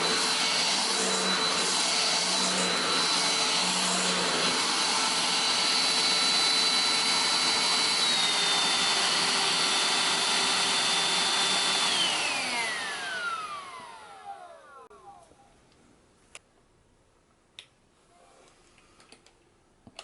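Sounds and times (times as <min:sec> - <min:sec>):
handheld vacuum motor whine: 0:00.0 - 0:15.3.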